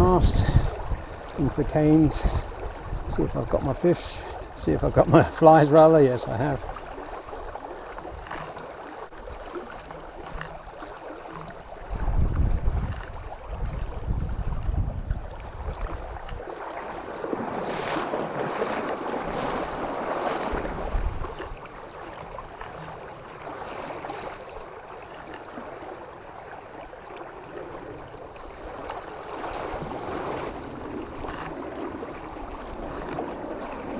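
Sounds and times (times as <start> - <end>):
wind gusting on microphone: 0.0 - 8.3, 11.7 - 16.5, 17.1 - 21.7
running river water: 0.0 - 33.9.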